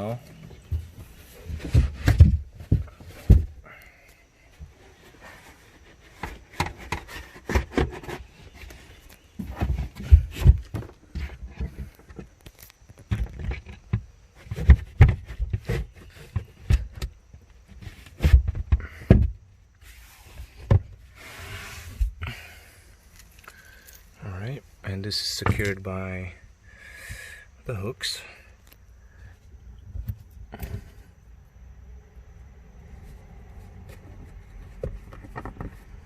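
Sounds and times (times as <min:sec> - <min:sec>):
scraping and rubbing: 0:19.8 - 0:22.2.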